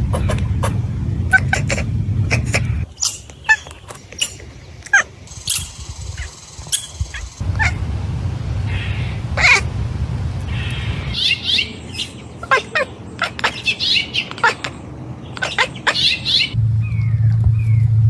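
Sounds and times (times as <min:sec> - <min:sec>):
low rumble: 0:00.0 - 0:02.9, 0:05.3 - 0:11.9, 0:16.5 - 0:18.0
high animal chirps and squeaks: 0:00.0 - 0:07.8, 0:10.5 - 0:17.9.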